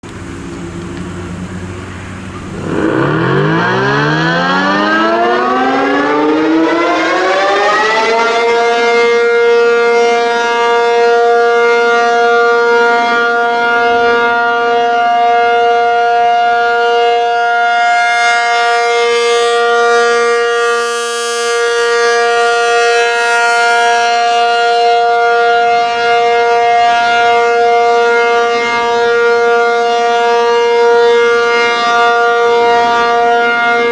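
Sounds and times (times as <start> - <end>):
tornado siren winding up: 2.3 - 14.1.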